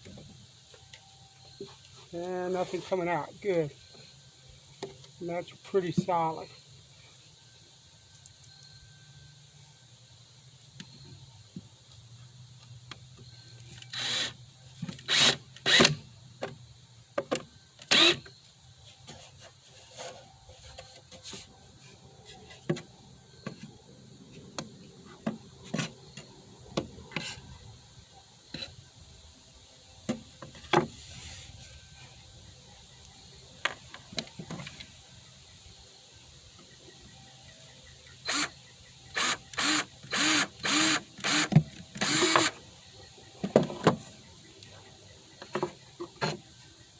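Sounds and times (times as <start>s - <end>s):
soft rubbing of wood: 18.8s - 22.9s, 30.4s - 32.4s.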